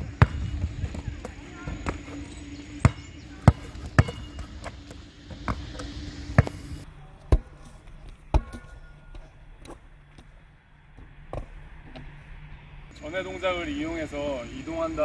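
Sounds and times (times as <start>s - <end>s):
basketball bouncing on court floor: 0.0s - 6.6s.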